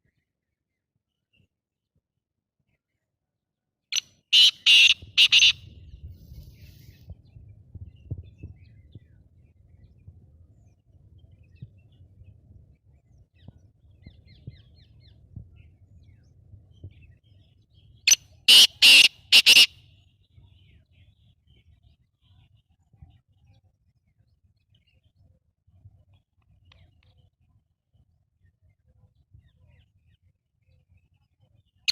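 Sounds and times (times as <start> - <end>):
francolin calling: 4.4 - 5.6, 18.5 - 19.7
faint low rumble: 5.0 - 18.0.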